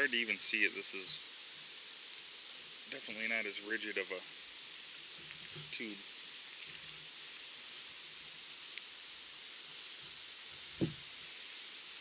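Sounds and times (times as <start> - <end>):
steady background hiss: 0.0 - 12.0
small tick: 8.7 - 8.9
handling noise: 10.6 - 11.0
low thump dropping in pitch: 10.8 - 11.0.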